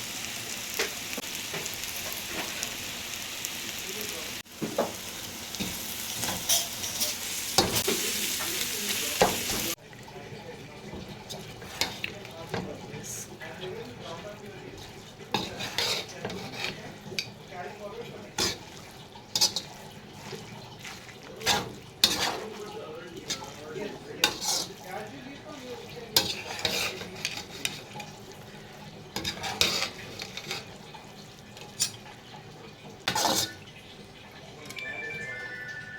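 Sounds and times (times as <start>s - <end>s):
food sizzling in a frying pan: 0.0s - 35.9s
spatula scraping a pan: 5.6s - 8.6s, 10.9s - 17.4s, 18.0s - 32.1s, 33.0s - 33.7s.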